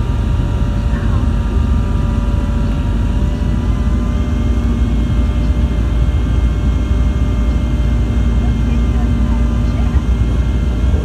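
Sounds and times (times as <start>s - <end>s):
airliner engine rumble: 0.0s - 11.0s
high engine whine: 0.0s - 11.0s.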